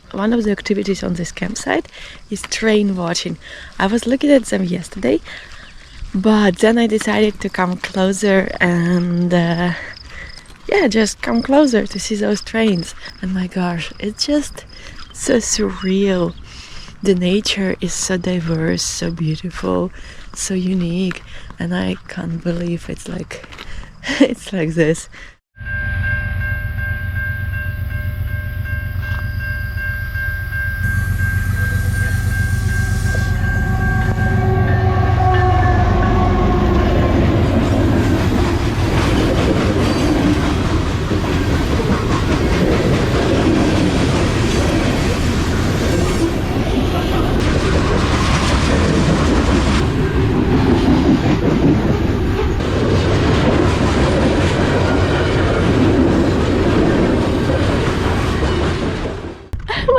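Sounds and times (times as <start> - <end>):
train pitched drone: 25.6 - 59.5
train wheels clattering on rails: 28.7 - 59.6.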